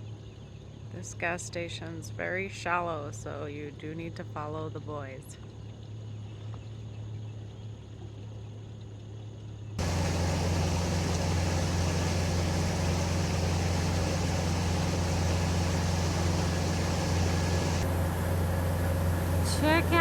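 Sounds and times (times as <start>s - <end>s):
boat engine droning: 9.8s - 20.0s
wide steady hiss: 9.8s - 20.0s.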